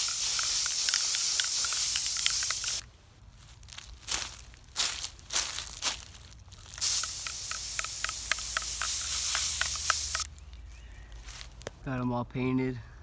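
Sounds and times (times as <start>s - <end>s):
spray can puffs: 0.0s - 2.8s, 6.8s - 10.3s
spray paint hissing: 0.0s - 2.8s, 6.8s - 10.3s.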